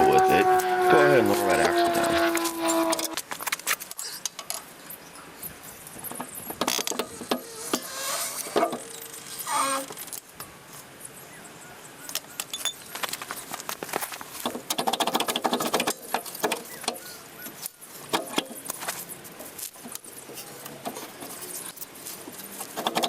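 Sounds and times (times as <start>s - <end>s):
pitched squeak: 7.0s - 10.0s
metallic clinks and rattles of tools: 12.4s - 12.9s.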